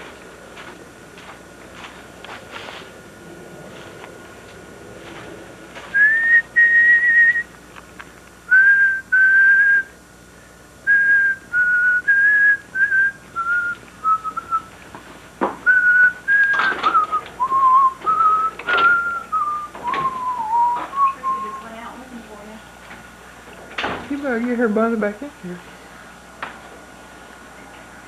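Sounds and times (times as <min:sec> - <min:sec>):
person whistling a tune: 0:05.9 - 0:07.5, 0:08.5 - 0:10.0, 0:10.9 - 0:14.7, 0:15.7 - 0:21.8.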